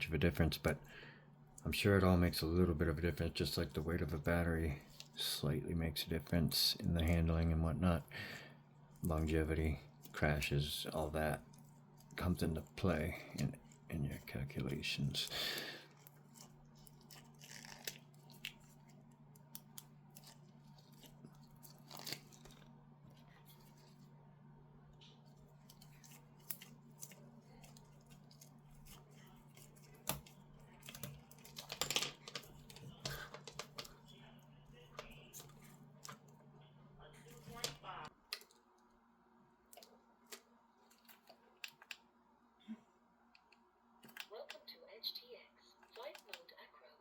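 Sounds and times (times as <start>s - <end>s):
steady low hum: 0.0s - 44.0s
small parts clicking and tapping: 29.8s - 34.0s.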